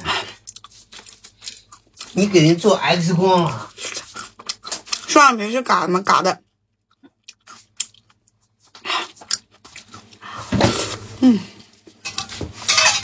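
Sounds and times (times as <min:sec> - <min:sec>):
wet chewing and slurping: 0:00.0 - 0:02.2, 0:03.5 - 0:05.1, 0:06.8 - 0:11.0.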